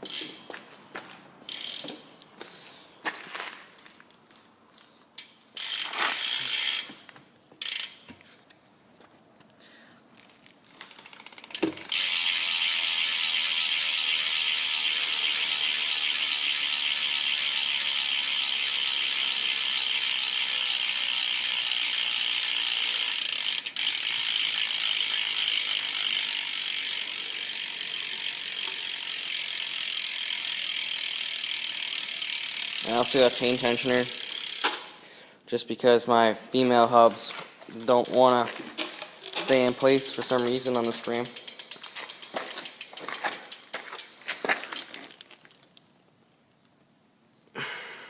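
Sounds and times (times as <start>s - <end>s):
bike hub ratcheting clicks: 0.0s - 0.4s, 1.5s - 2.0s, 5.2s - 8.1s, 10.2s - 34.9s, 37.8s - 45.9s.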